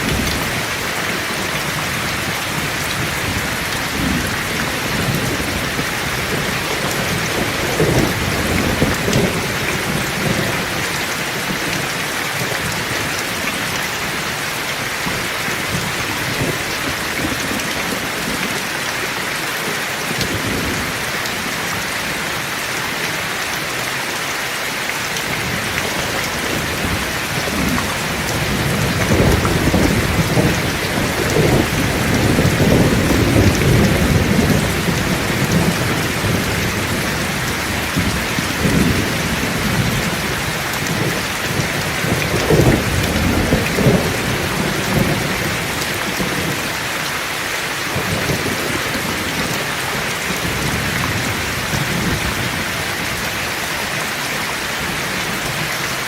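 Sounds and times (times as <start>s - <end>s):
rolling thunder rumble: 0.0s - 10.8s, 25.3s - 46.6s
heavy rain falling: 0.0s - 56.0s.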